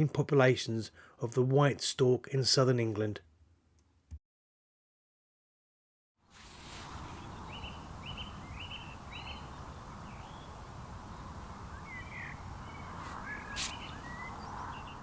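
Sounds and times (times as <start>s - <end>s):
low rumble of wind: 6.3s - 15.0s
small bird chirping: 6.8s - 15.0s.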